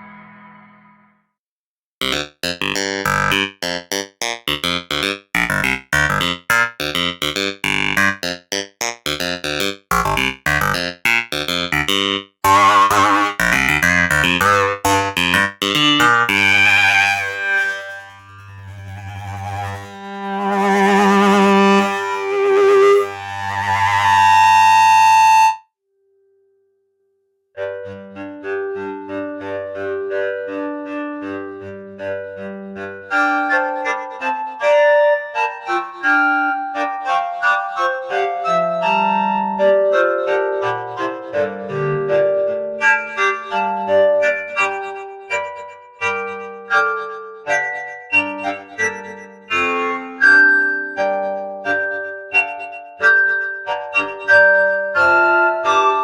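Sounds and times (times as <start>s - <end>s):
synthesizer staccato notes: 2.0s - 17.4s.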